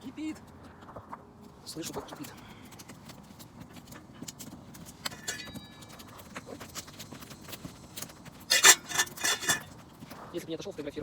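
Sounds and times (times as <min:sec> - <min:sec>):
water boiling with popping: 0:06.1 - 0:10.1.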